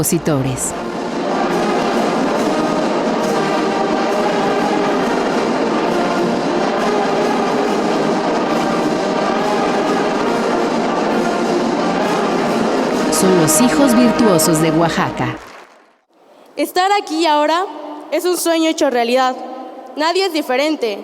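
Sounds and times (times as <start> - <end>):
wind band playing: 0.0 - 15.9.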